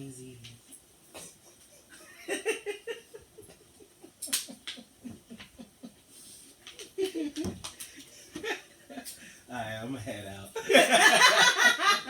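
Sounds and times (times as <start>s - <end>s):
people laughing: 10.6s - 12.0s.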